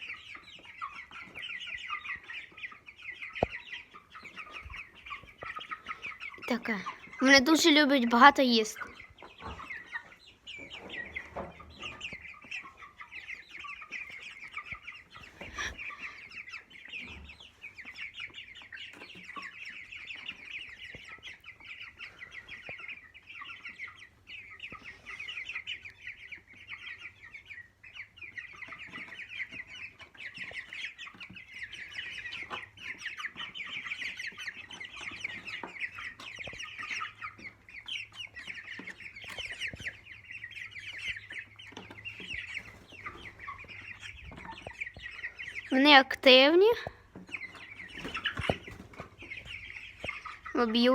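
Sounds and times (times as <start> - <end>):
chicks cheeping and clucking: 0.0 - 50.9.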